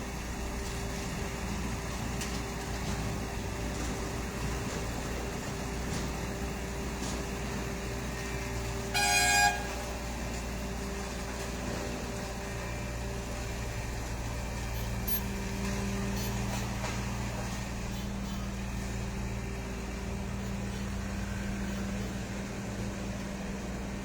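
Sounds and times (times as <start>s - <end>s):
road roller engine running: 0.0s - 24.0s
vehicle horn toot: 8.9s - 10.0s.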